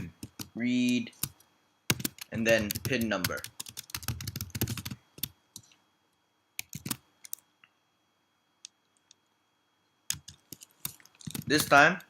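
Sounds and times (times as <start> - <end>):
computer keyboard keystrokes: 0.2 - 5.3, 6.6 - 7.4, 10.1 - 11.6.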